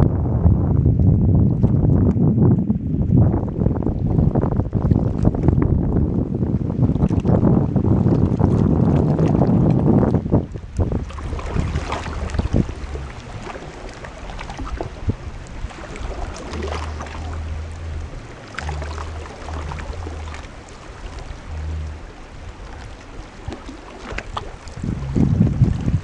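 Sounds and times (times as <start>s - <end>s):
wind buffeting microphone: 0.0s - 26.0s
flowing flood water: 3.3s - 26.0s
small water splashes: 6.6s - 26.0s.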